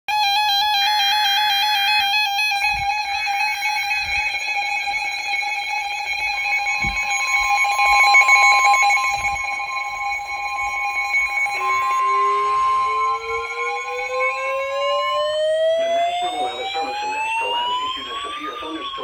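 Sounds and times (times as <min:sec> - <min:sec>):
steady alarm tone: 0:00.1 - 0:19.0
higher electronic tone: 0:01.0 - 0:19.0
stepping warbling electronic tone: 0:06.0 - 0:19.0.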